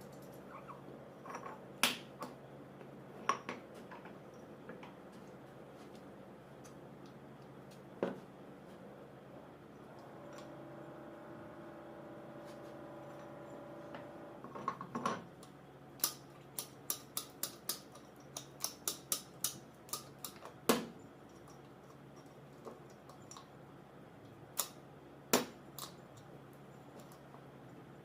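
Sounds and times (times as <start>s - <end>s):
faint steady hum: 0.0s - 28.0s
metal tools clicking and tapping: 16.0s - 20.5s.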